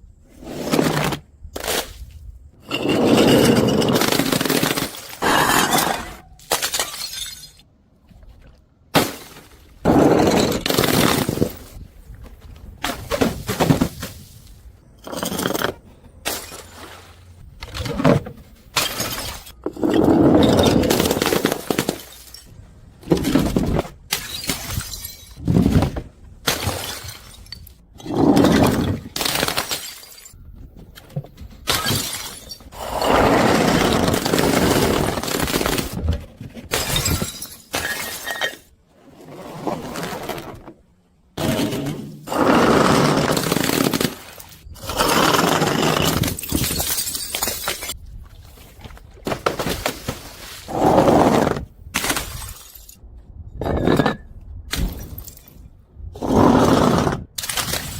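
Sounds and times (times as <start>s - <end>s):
glass bottles shattering: 2.6s - 7.6s, 15.0s - 16.9s, 20.4s - 22.6s, 24.1s - 25.4s, 26.5s - 27.7s, 28.4s - 30.4s, 31.7s - 32.8s, 36.7s - 38.7s, 45.3s - 48.0s, 52.0s - 53.0s, 53.8s - 55.6s.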